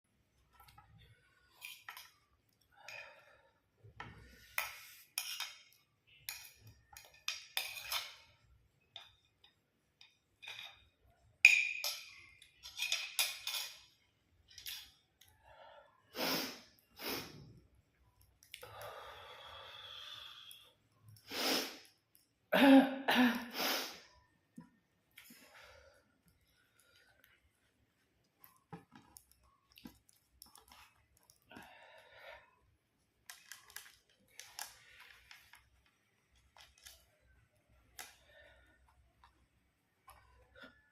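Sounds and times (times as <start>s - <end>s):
breathing: 2.7s - 5.1s, 15.4s - 16.6s, 18.6s - 21.8s, 25.2s - 27.3s, 31.5s - 32.8s, 38.1s - 38.9s.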